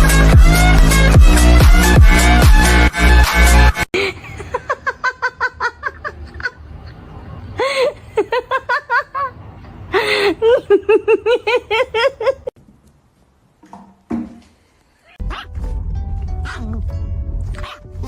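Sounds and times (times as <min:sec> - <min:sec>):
person laughing hard: 0:04.0 - 0:09.4, 0:10.0 - 0:12.6.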